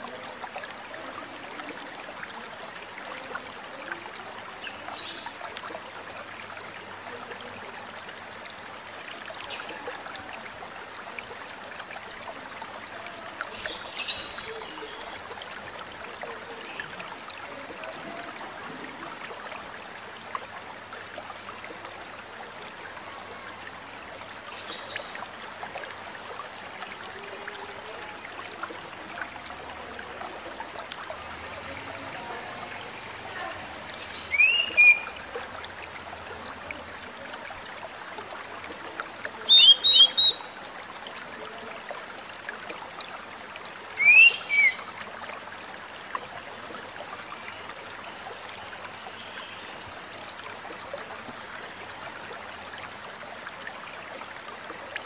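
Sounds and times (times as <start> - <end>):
stream running: 0.0 - 55.0
short high bird calls: 34.0 - 35.2, 39.5 - 40.5, 44.0 - 44.8.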